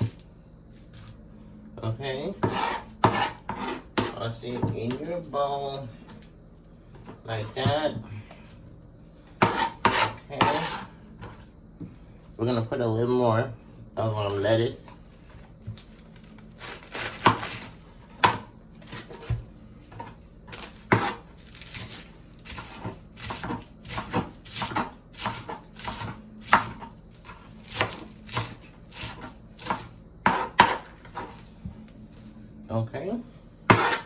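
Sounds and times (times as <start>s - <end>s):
knife chopping on cutting board: 2.4s - 5.0s, 9.4s - 11.4s, 16.6s - 31.4s, 33.7s - 34.0s.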